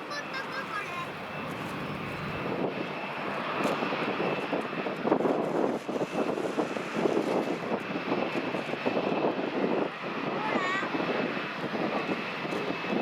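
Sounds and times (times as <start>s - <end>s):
jet engine with high whine: 0.0s - 13.0s
wind buffeting microphone: 0.2s - 13.0s.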